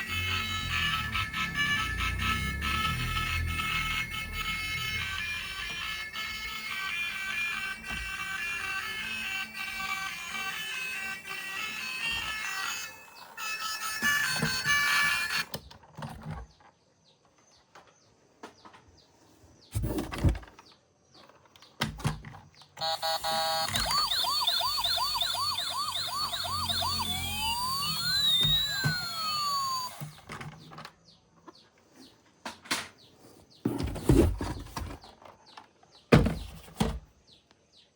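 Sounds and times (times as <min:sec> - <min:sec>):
toy electronic siren: 0:00.0 - 0:15.5, 0:22.8 - 0:30.4.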